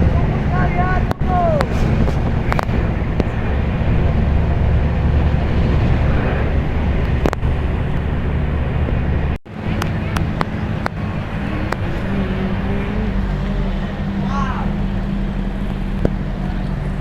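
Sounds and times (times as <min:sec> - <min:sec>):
bus engine rumbling: 0:00.0 - 0:17.0
sharp clicks and rattles: 0:06.8 - 0:09.0.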